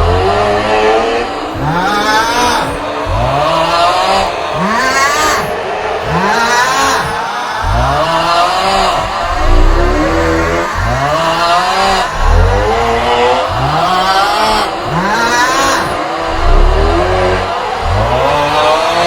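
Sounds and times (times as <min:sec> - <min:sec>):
deep rumble: 0:00.0 - 0:00.8, 0:01.4 - 0:04.7, 0:07.6 - 0:15.2, 0:16.3 - 0:18.4
man's strained groan: 0:01.4 - 0:18.4.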